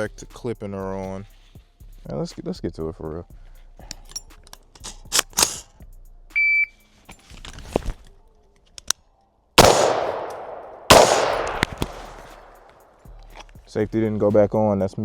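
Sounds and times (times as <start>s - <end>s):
rifle shots with echo: 9.6s - 12.6s.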